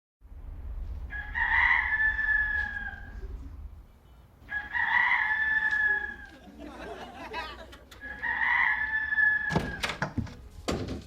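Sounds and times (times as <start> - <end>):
low steady hum: 0.2 - 4.5
rooster crowing: 1.1 - 3.2, 4.5 - 6.4, 8.0 - 9.8.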